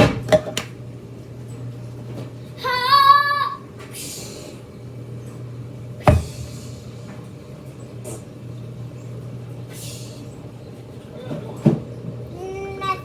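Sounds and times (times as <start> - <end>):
steady low hum: 0.0 - 11.2
sharp knock: 6.1 - 6.6.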